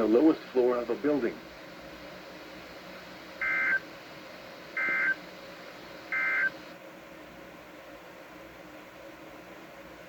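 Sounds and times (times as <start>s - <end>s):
radio hiss: 0.0s - 6.8s
digital data tone bursts: 3.4s - 3.8s, 4.8s - 5.2s, 6.1s - 6.6s.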